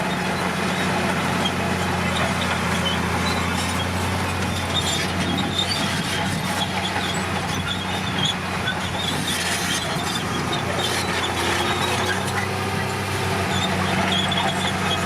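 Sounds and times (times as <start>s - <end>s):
bulldozer diesel engine running: 0.0s - 15.0s
short high squeaks: 1.4s - 12.6s, 13.5s - 15.0s.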